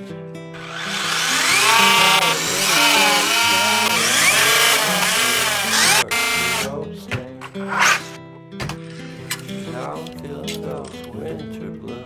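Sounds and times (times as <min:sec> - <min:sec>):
background music: 0:00.0 - 0:12.0
toy truck electric motor whining: 0:00.6 - 0:06.7, 0:07.7 - 0:08.2.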